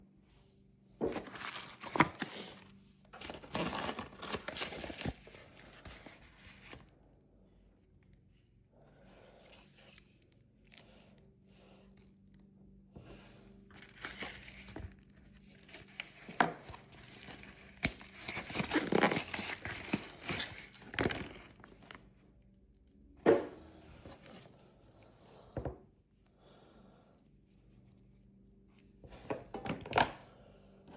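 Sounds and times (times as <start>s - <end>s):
rustling and crinkling: 1.0s - 6.9s, 13.1s - 22.2s.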